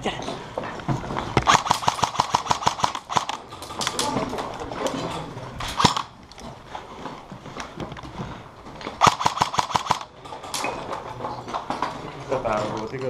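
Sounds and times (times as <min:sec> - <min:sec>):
airsoft gun burst: 0:01.4 - 0:03.4, 0:05.7 - 0:06.1, 0:09.0 - 0:10.1.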